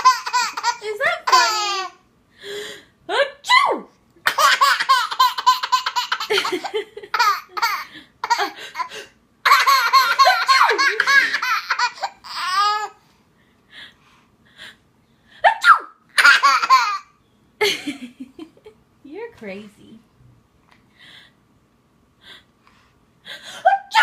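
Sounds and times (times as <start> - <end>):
baby giggling: 0.0 - 2.0, 4.2 - 13.0, 16.2 - 17.9.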